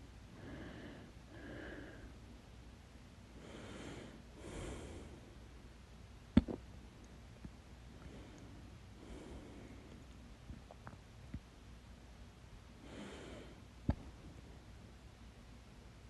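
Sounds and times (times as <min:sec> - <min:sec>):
person breathing: 0:00.3 - 0:02.2, 0:03.4 - 0:05.4, 0:08.0 - 0:10.0, 0:12.8 - 0:13.7.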